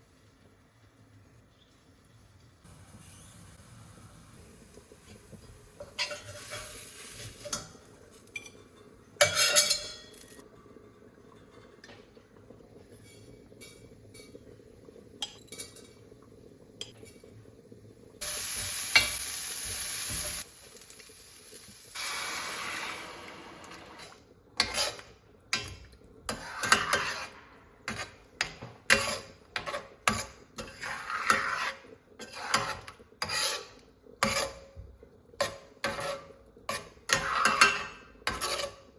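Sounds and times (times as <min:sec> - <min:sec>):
steady hiss: 0:02.6 - 0:08.3, 0:17.7 - 0:23.9
spoon scraping a pot: 0:05.8 - 0:10.4, 0:24.0 - 0:25.7, 0:26.3 - 0:34.7, 0:35.4 - 0:38.9
utensils clinking against pots: 0:05.8 - 0:10.4, 0:15.2 - 0:16.0, 0:35.4 - 0:38.8.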